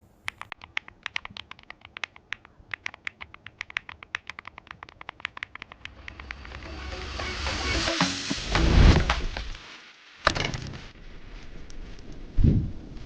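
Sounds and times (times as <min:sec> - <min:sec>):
mechanical keyboard typing: 0:00.2 - 0:06.6.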